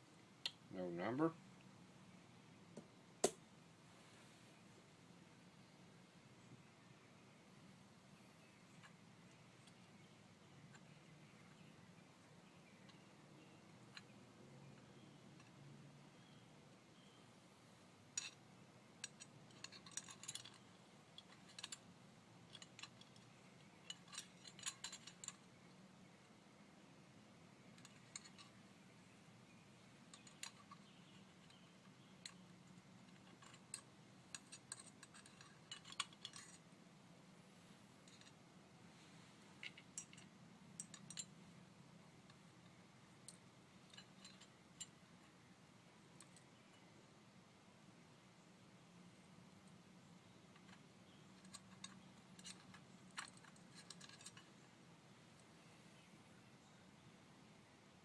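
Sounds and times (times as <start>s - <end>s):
metallic clicks and clinks: 18.1s - 18.4s, 19.0s - 25.8s, 27.7s - 28.6s, 30.0s - 36.6s, 38.0s - 38.4s, 39.0s - 41.5s, 42.3s - 45.4s, 46.2s - 46.8s, 50.5s - 54.7s
metal plates clicking and clinking: 19.0s - 21.8s, 30.1s - 36.6s, 51.4s - 54.6s.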